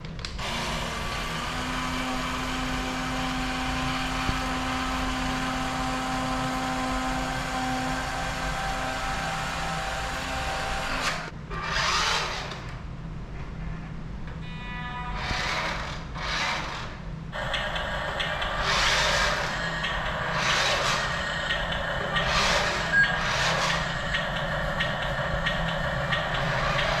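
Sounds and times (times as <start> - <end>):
toy electric motors whining: 0.4 - 12.7, 15.2 - 27.0
loud noisy burst: 15.2 - 27.0.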